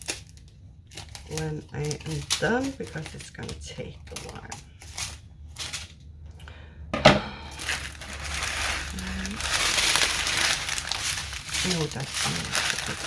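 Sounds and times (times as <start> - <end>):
plastic bags crinkling: 0.0 - 6.0, 7.4 - 13.0.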